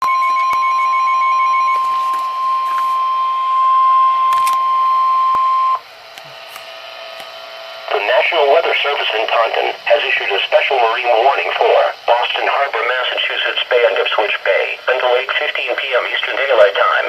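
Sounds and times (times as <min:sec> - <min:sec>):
steady alarm tone beep: 0:00.0 - 0:17.0
radio hiss: 0:07.3 - 0:17.0.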